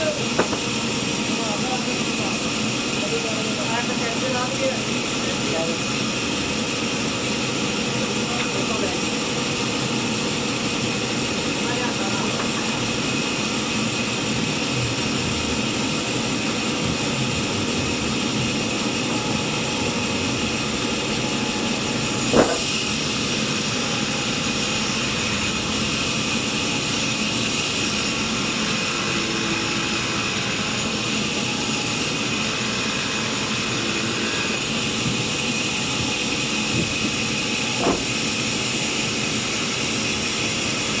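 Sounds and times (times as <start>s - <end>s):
sawmill machinery drone with whine: 0.0s - 41.0s
sharp knock: 22.3s - 22.7s.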